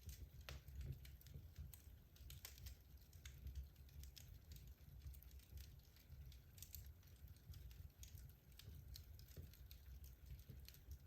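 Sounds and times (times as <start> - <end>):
wood fire crackling: 0.0 - 11.0.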